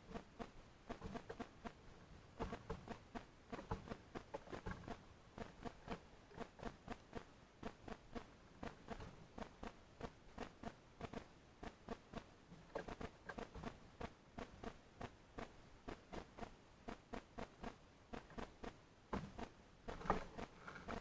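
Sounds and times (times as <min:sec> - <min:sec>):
birds pecking at seed: 0:00.0 - 0:21.0.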